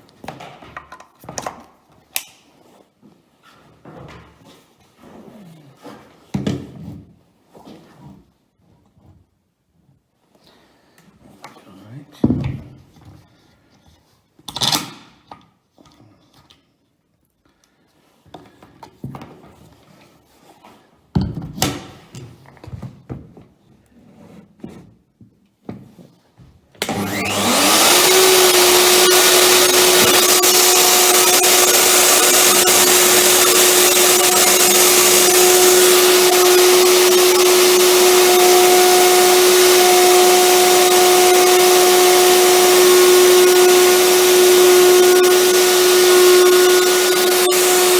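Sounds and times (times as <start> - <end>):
router whining while cutting wood: 26.8 - 47.9.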